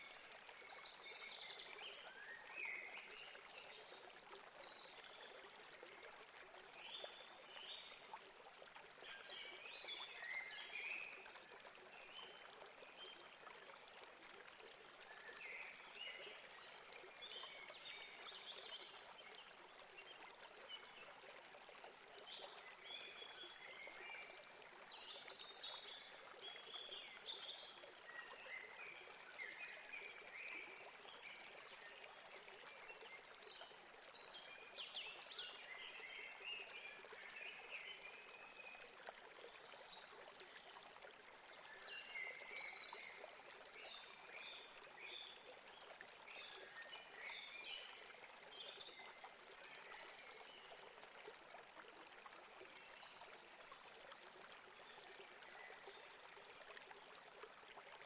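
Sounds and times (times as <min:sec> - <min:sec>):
stream running over rocks: 0:00.0 - 0:58.0.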